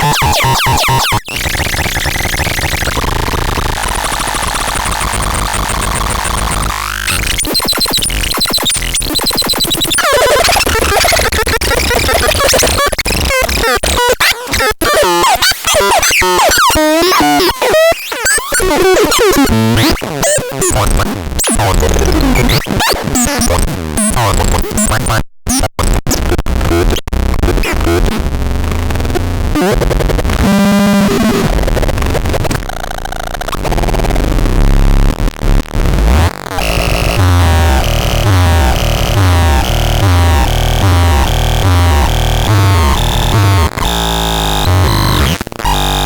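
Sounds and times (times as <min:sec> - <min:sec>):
stuttering chopped tones: 0:00.0 - 0:14.7, 0:35.0 - 0:46.0
glitchy buzzing and clicking: 0:00.0 - 0:15.2, 0:15.8 - 0:46.0.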